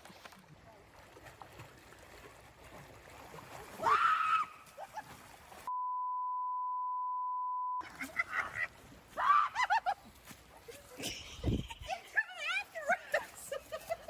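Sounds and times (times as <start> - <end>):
censor bleep: 5.7 - 7.8.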